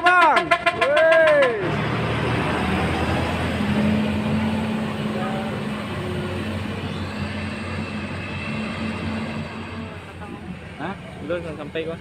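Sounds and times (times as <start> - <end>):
bus diesel engine pulling away: 1.4 - 12.0.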